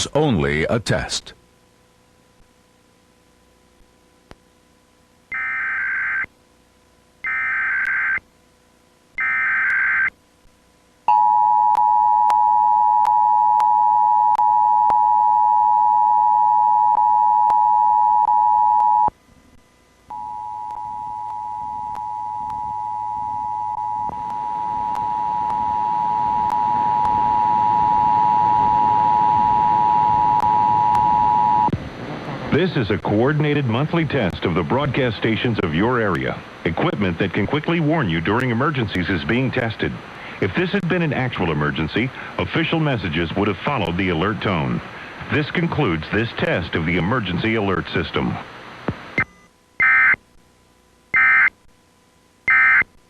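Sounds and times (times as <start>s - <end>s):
screeching digital header tones: 9.2s - 10.1s, 51.2s - 51.5s, 52.5s - 52.8s.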